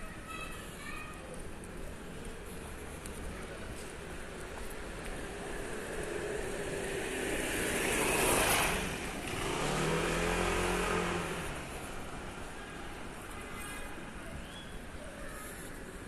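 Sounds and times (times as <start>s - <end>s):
engine hum: 2.4s - 13.4s
car passing by: 5.4s - 12.3s.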